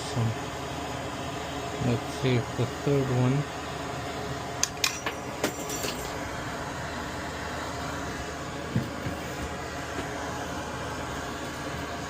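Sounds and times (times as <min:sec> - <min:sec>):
tools clicking and clinking: 0:04.6 - 0:06.2.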